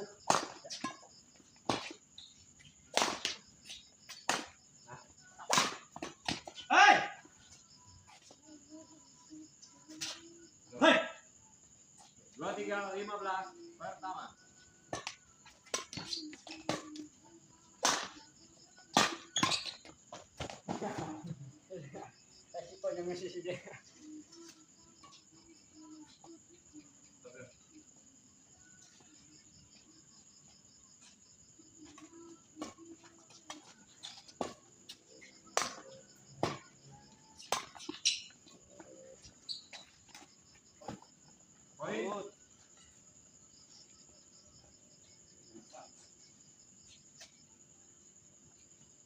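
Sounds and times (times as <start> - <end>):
racket hitting ball: 2.9 - 3.4, 5.5 - 6.5, 18.9 - 19.6, 37.5 - 38.0.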